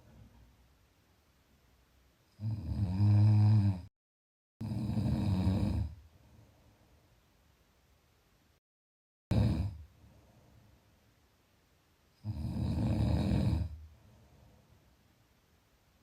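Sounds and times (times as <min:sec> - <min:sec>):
person snoring: 0:02.3 - 0:03.9, 0:04.6 - 0:06.0, 0:09.3 - 0:09.9, 0:12.2 - 0:13.8.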